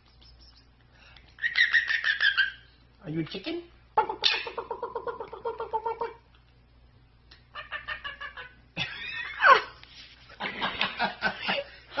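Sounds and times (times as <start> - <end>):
parrot clucking like a chicken: 1.3 - 2.7, 4.0 - 6.2, 7.4 - 8.7.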